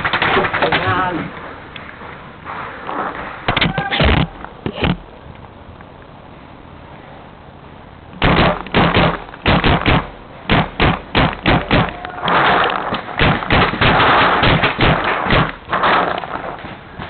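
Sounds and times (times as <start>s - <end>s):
paintball marker firing: 8.2s - 12.0s.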